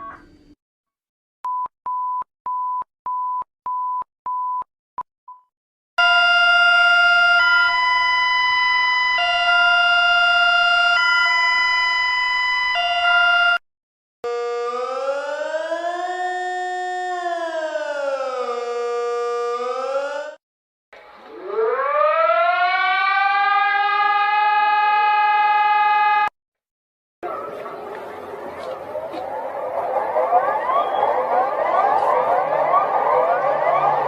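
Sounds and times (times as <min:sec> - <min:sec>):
siren-like electronic wail: 0:06.0 - 0:13.6, 0:14.3 - 0:20.4, 0:21.2 - 0:26.3, 0:27.2 - 0:34.0.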